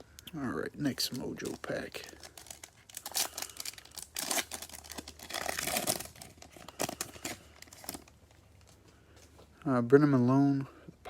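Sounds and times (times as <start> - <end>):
wrapper tearing and crinkling: 1.0 - 8.7.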